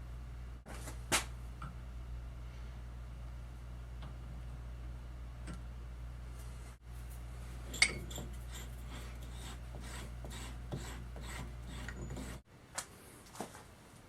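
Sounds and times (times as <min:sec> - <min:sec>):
hand file rasping on metal: 0:08.1 - 0:12.4.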